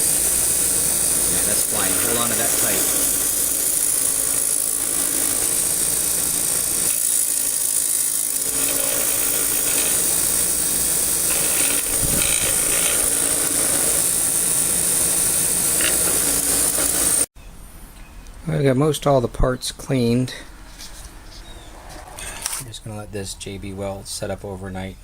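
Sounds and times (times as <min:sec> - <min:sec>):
power tool grinding metal: 0:00.0 - 0:17.3.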